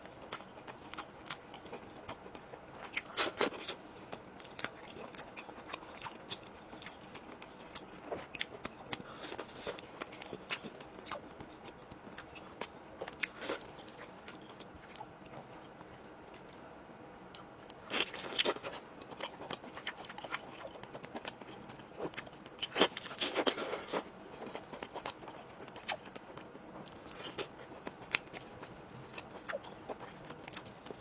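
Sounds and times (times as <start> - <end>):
crunching and chewing chicken: 0.0 - 16.7, 17.3 - 31.0.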